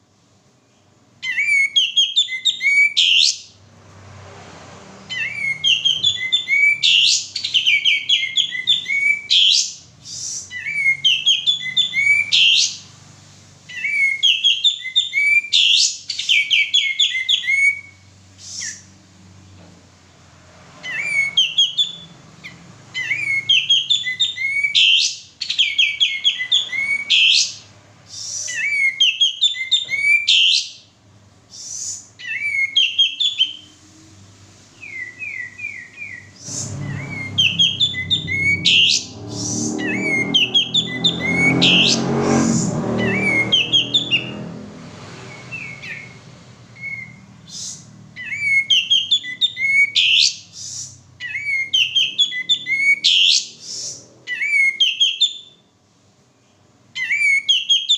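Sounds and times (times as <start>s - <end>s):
bird singing whistled chattering notes: 5.1s - 12.9s, 20.9s - 30.8s, 34.8s - 42.1s.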